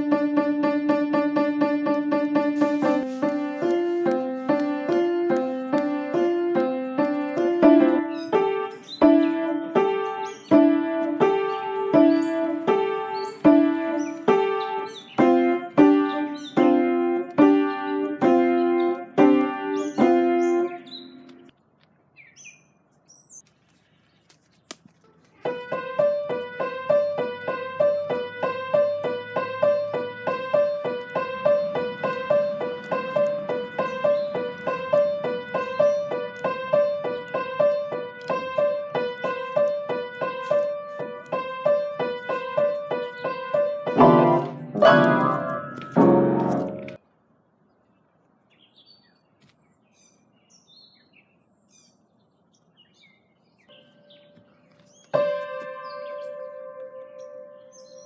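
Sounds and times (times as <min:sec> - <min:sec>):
piano-like keyboard music: 0:00.0 - 0:21.5, 0:25.4 - 0:47.0, 0:53.8 - 0:58.0
click: 0:31.8 - 0:38.6.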